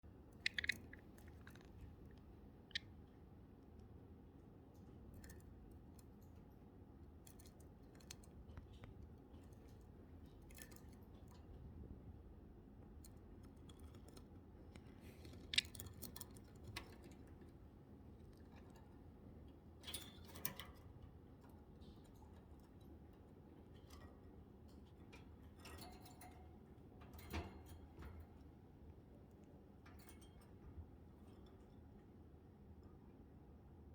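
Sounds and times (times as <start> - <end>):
budgie beak nibbling and tapping: 0.4 - 2.9, 13.1 - 17.4.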